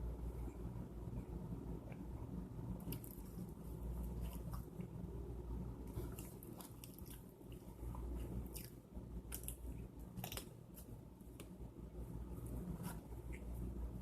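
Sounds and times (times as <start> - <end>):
low steady hum: 0.0 - 14.0
person chewing food: 2.8 - 5.0, 5.8 - 11.6
small crunches and clicks: 8.5 - 11.6.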